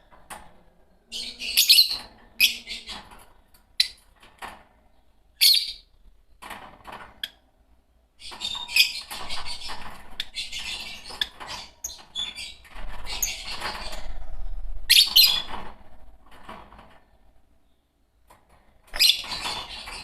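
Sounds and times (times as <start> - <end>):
lovebirds chirping and chattering: 0.9 - 4.2, 4.8 - 6.4, 8.1 - 15.9, 18.9 - 20.0.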